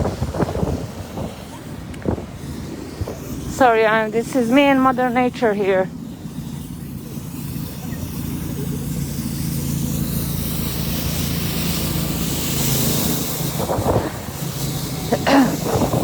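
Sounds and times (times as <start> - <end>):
vehicle engine hum: 0.0 - 16.0
wind gusting across microphone: 0.0 - 16.0.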